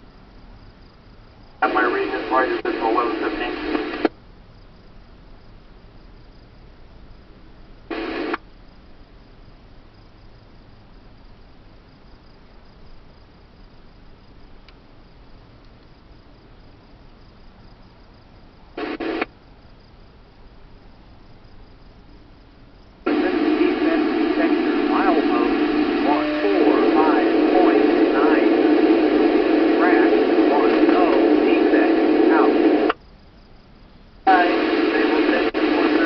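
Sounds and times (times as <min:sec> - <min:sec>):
bursts of radio static: 0:01.6 - 0:04.1, 0:07.9 - 0:08.4, 0:18.8 - 0:19.3, 0:23.1 - 0:33.0, 0:34.3 - 0:36.0
radio scanner hissing: 0:01.6 - 0:04.1, 0:07.9 - 0:08.4, 0:18.8 - 0:19.3, 0:23.1 - 0:33.0, 0:34.3 - 0:36.0
radio transmission: 0:01.6 - 0:04.1, 0:07.9 - 0:08.4, 0:18.8 - 0:19.3, 0:23.1 - 0:33.0, 0:34.3 - 0:36.0.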